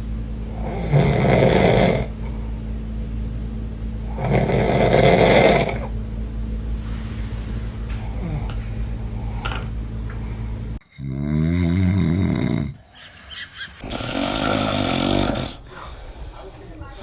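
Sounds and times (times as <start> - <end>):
steady low hum: 0.0 - 17.0
man snoring loudly: 0.4 - 2.3, 4.0 - 5.9, 8.0 - 9.7, 10.8 - 12.9, 13.8 - 15.6.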